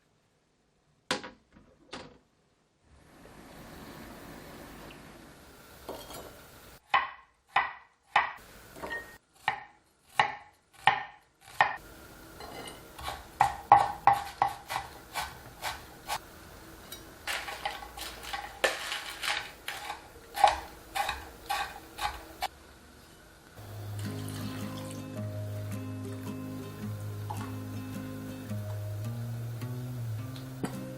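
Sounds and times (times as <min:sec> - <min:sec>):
knife chopping on cutting board: 0:09.4 - 0:11.8, 0:13.0 - 0:16.2, 0:19.7 - 0:22.3.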